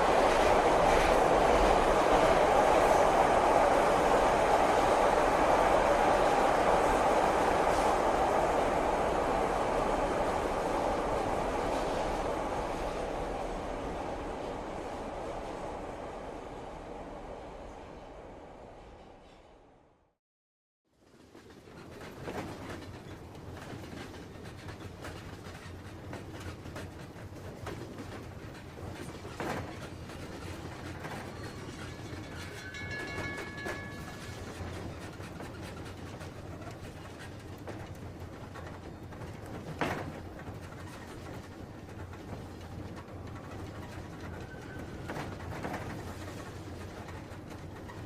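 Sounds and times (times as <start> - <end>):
train rumbling on rails: 0.0 - 20.2, 20.9 - 48.0
knocks and rattles: 21.4 - 48.0.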